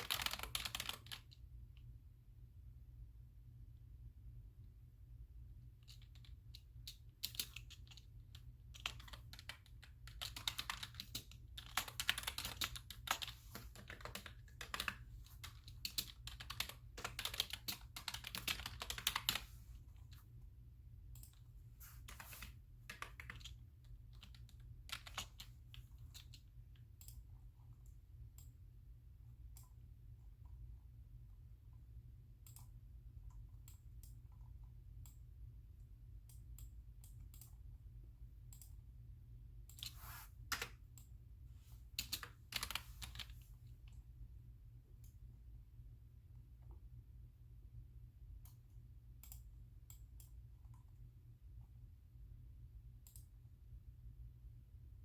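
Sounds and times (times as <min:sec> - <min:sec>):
typing on computer keyboard: 0:00.0 - 0:01.4, 0:05.8 - 0:20.2, 0:21.1 - 0:28.6, 0:41.9 - 0:44.0.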